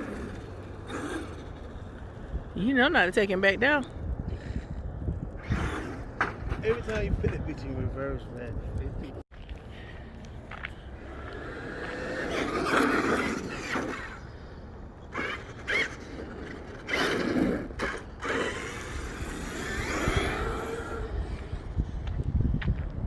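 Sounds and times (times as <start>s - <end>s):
electric motor whining: 15.1s - 21.8s.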